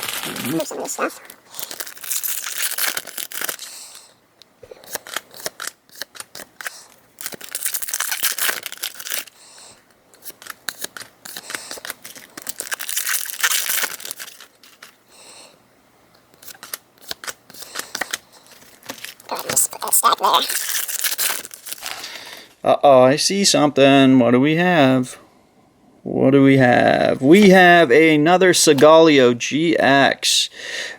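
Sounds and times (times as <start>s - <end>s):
foil wrappers tearing and crinkling: 0.0s - 4.1s, 4.8s - 9.4s, 10.2s - 15.0s, 16.4s - 22.3s.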